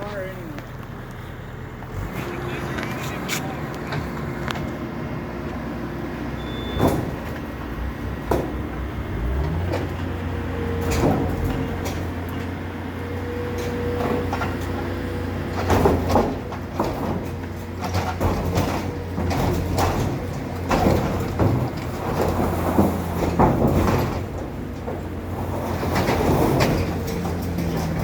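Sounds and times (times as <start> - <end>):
heavy machinery engine drone: 0.0 - 28.0
metallic clanks and knocks: 6.4 - 12.7, 13.4 - 28.0.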